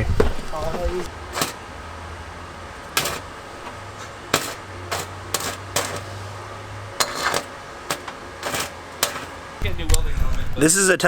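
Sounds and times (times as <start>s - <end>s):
steady low hum: 0.0s - 10.8s.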